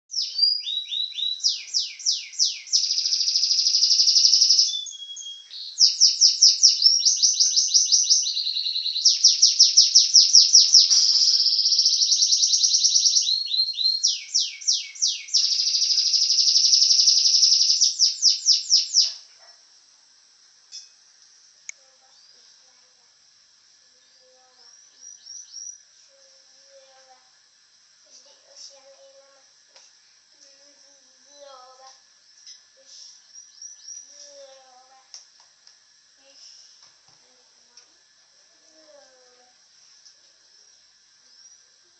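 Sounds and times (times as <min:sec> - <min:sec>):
canary singing: 0:00.1 - 0:19.3, 0:24.0 - 0:25.9, 0:33.3 - 0:34.5.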